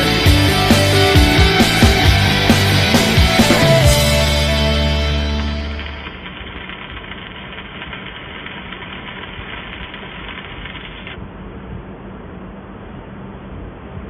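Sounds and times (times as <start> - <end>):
background music: 0.0 - 6.1
welding arc hissing: 1.6 - 11.2.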